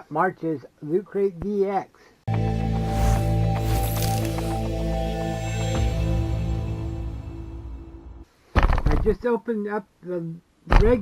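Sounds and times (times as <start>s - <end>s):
music with held notes: 2.3s - 8.3s.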